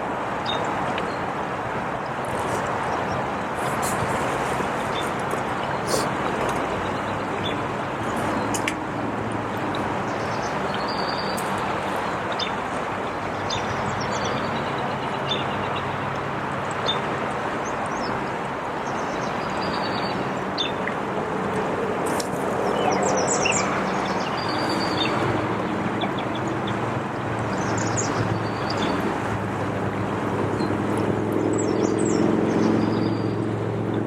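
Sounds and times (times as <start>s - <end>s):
river water rushing: 0.0s - 34.0s
small birds chirping: 2.0s - 8.8s.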